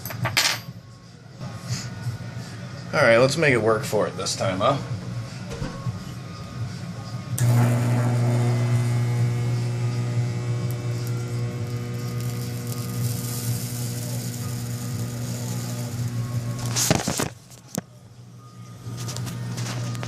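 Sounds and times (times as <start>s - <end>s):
transformer buzzing: 7.4s - 17.3s
electrical crackling: 7.4s - 17.4s.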